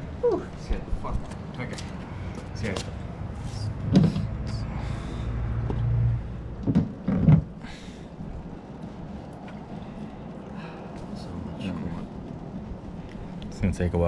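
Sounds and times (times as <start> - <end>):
low rumble: 3.0 - 14.0
sharp knocks under a car: 3.8 - 4.3, 6.6 - 7.6.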